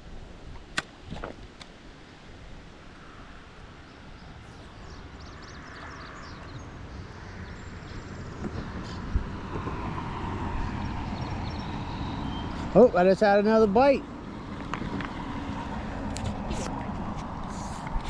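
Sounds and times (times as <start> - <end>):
motor vehicle rumbling: 4.5 - 18.0.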